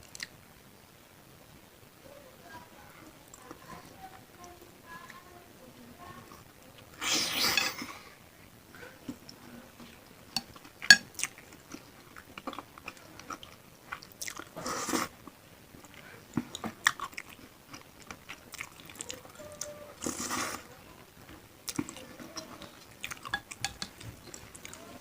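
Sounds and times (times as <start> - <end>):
close chewing and biting: 15.8 - 20.6.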